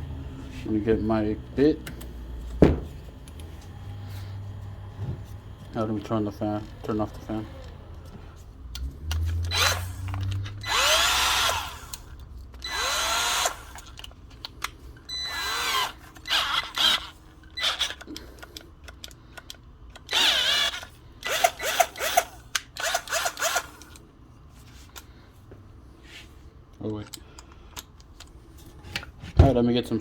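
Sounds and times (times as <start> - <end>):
cordless drill motor bursts: 9.3 - 13.9, 15.1 - 18.0, 20.0 - 24.0.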